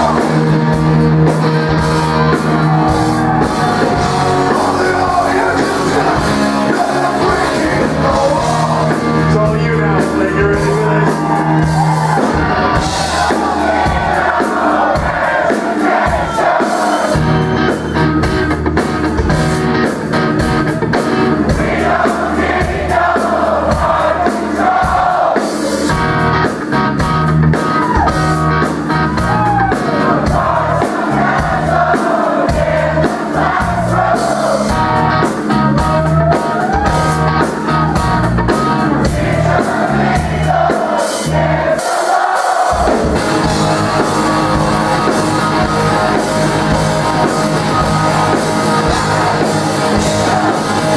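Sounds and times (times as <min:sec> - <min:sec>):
live rock band playing: 0:00.0 - 0:50.9
person singing: 0:02.7 - 0:11.5.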